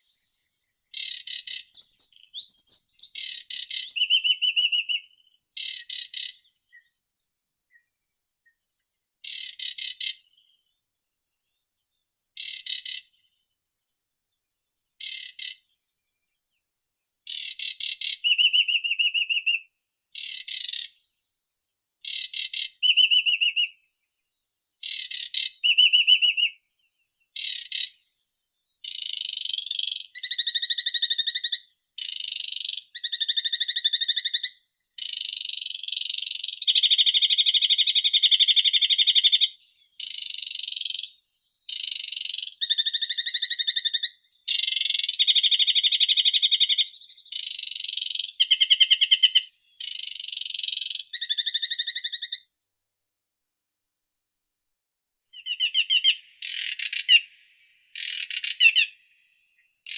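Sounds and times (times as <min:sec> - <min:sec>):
songbird trilling: 0:00.9 - 0:07.9, 0:17.3 - 0:21.0, 0:22.0 - 0:23.8, 0:24.8 - 0:26.6, 0:28.8 - 0:52.5, 0:55.3 - 0:59.9.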